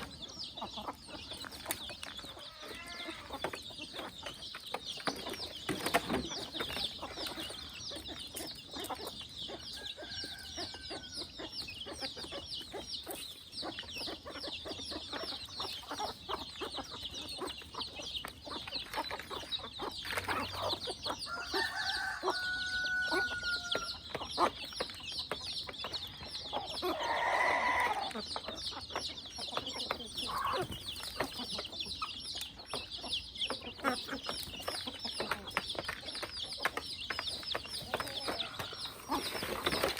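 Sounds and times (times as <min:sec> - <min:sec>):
drawn-out chicken call: 0:00.0 - 0:04.4, 0:06.0 - 0:39.9
chickens clucking: 0:00.0 - 0:39.9.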